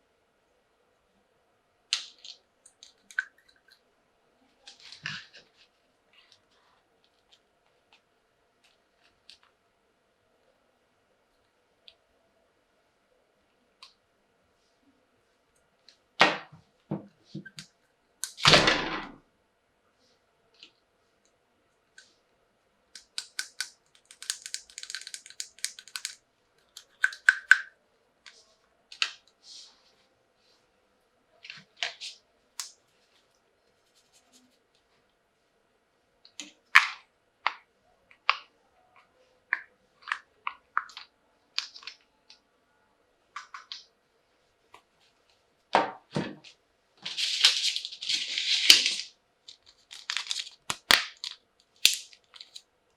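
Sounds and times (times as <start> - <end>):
plastic toy pieces clicking: 23.0 - 27.7, 47.2 - 52.6.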